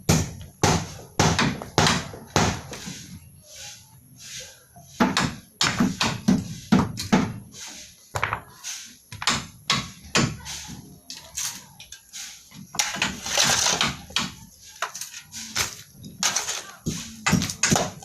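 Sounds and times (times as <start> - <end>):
scraping rasping sound: 10.4 - 18.0.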